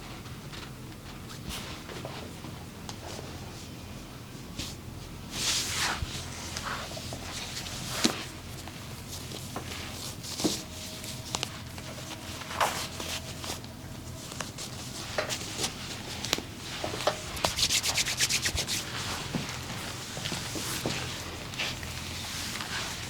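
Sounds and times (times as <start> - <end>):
quick short rubbing strokes: 17.3 - 19.1
hands rubbing skin: 17.3 - 19.2.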